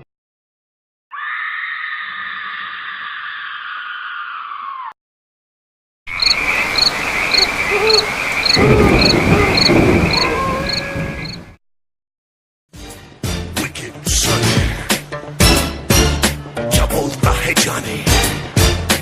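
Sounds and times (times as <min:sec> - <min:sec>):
crickets chirping: 0:06.1 - 0:11.5
frogs croaking: 0:06.1 - 0:11.5.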